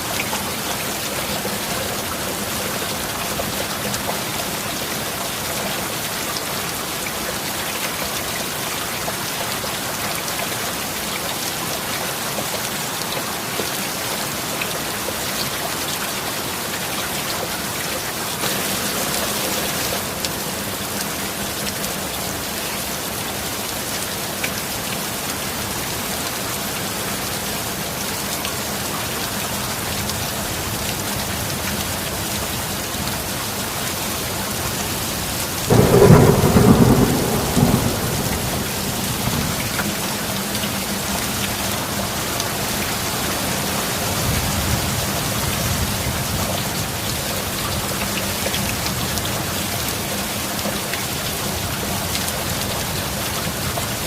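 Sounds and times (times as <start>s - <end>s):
heavy rain falling: 0.0s - 54.0s
thunder rumbling: 35.7s - 40.6s.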